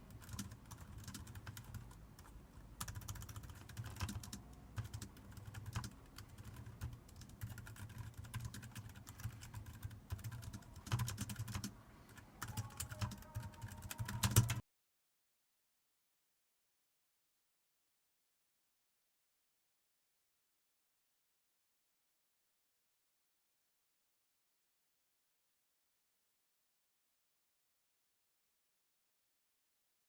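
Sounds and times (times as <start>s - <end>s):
typing on computer keyboard: 0.0s - 14.6s.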